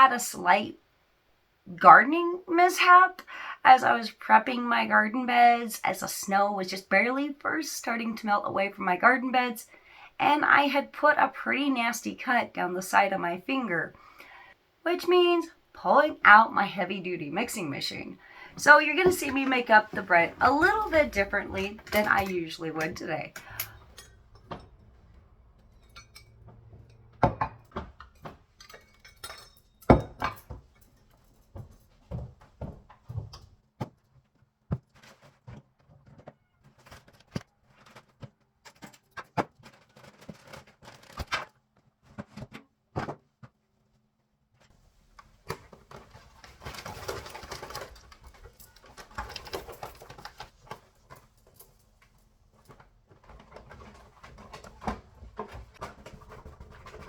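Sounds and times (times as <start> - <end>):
rustling: 17.3 - 42.6, 44.6 - 57.0
utensils clicking and knocking: 18.6 - 33.5, 45.2 - 57.0.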